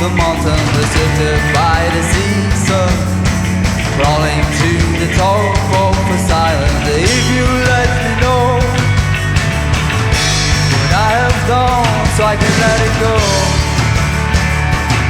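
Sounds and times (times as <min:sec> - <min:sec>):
drum kit: 0:00.0 - 0:15.0
rock band playing live: 0:00.0 - 0:15.0
bending melodic lead line: 0:04.2 - 0:15.0.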